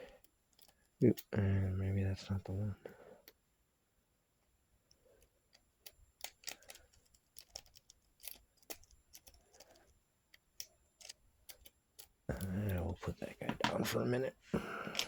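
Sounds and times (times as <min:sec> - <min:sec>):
lock-picking tools clicking: 0:00.0 - 0:01.3, 0:04.8 - 0:13.8.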